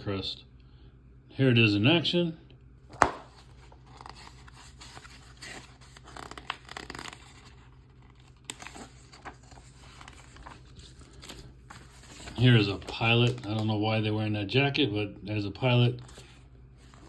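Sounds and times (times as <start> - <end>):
magazine pages rustling: 2.9 - 14.1, 15.6 - 17.0.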